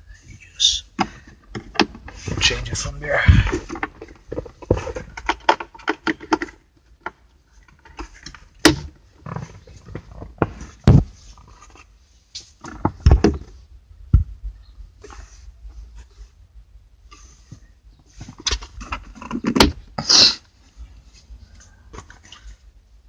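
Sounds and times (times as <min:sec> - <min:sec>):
sharp knocks and thuds: 0:01.0 - 0:05.6, 0:08.6 - 0:11.2, 0:12.7 - 0:14.6.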